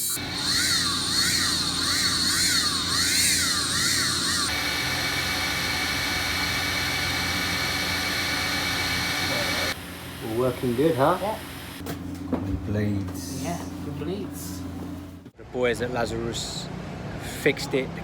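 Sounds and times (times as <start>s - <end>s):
drone motors whining: 0.0s - 9.8s.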